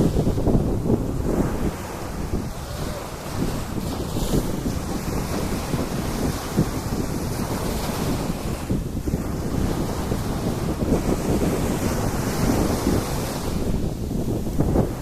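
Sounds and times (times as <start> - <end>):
sea waves washing onto beach: 0.0 - 15.0
wind buffeting microphone: 0.0 - 15.0.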